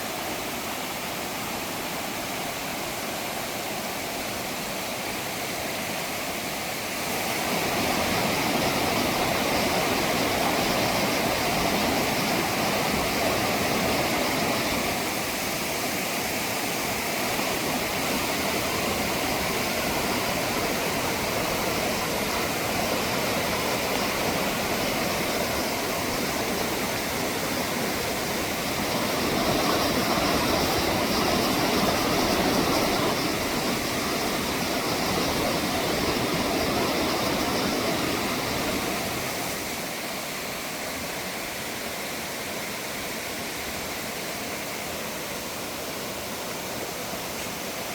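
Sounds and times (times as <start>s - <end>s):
stream water rushing: 0.0s - 47.9s.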